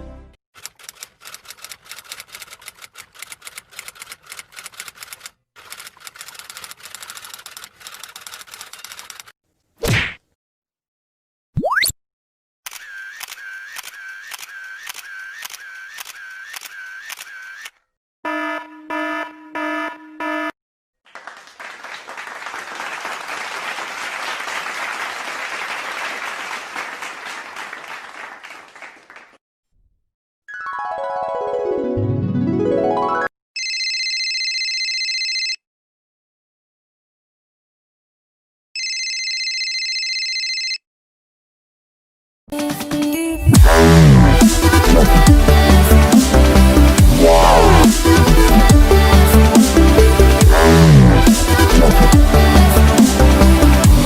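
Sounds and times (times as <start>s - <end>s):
crowd applauding: 21.1s - 29.4s.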